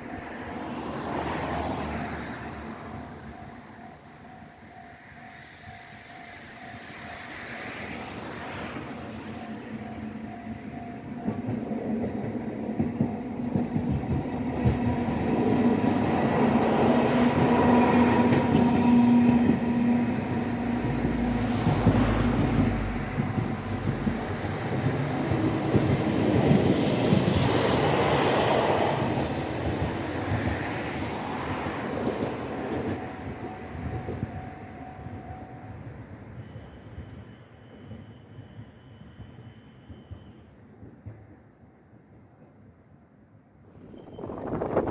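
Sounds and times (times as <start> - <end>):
crossing warning bell: 0.0 - 40.6
streetcar wheels clacking on rails: 8.1 - 35.4.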